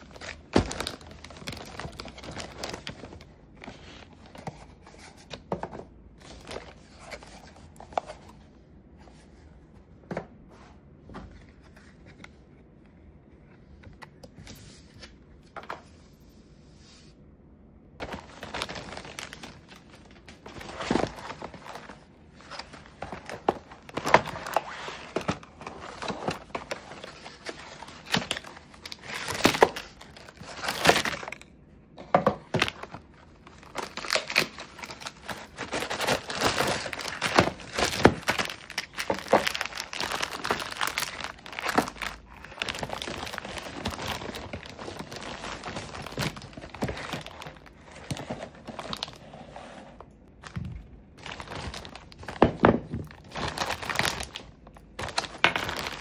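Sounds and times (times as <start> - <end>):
packaging rustling and tearing: 0.0 - 5.3, 18.0 - 31.4, 32.5 - 49.6, 50.4 - 56.0.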